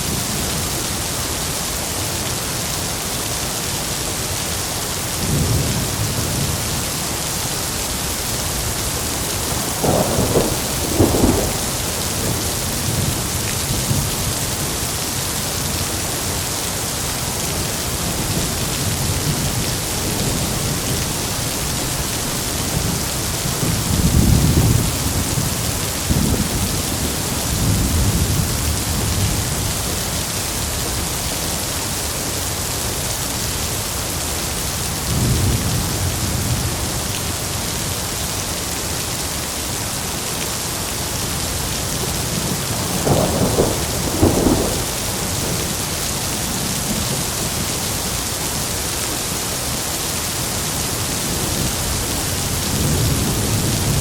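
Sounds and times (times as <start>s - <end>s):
heavy rain falling: 0.0s - 54.0s
thunder rumbling: 9.4s - 14.8s, 42.1s - 47.6s.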